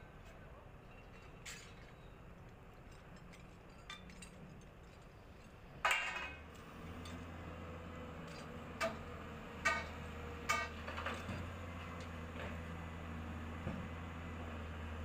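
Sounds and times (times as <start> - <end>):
excavator engine hum: 0.0 - 15.0
metal clank: 5.8 - 6.4.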